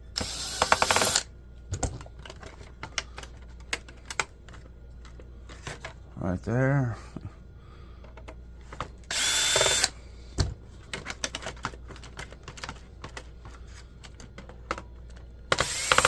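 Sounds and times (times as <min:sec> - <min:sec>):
power driver whirring: 0:00.1 - 0:01.3, 0:09.1 - 0:10.0, 0:15.5 - 0:16.0
parts clicking and knocking: 0:00.1 - 0:06.0, 0:08.0 - 0:16.0.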